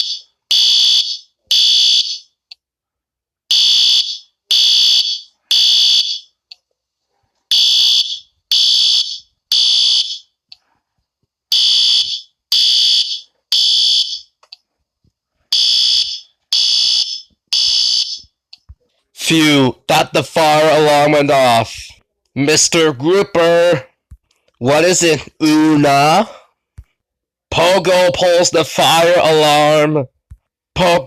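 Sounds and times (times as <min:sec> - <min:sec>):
fire alarm beeping: 0:00.0 - 0:02.4, 0:03.5 - 0:06.3, 0:07.5 - 0:10.3, 0:11.5 - 0:14.3, 0:15.5 - 0:18.3.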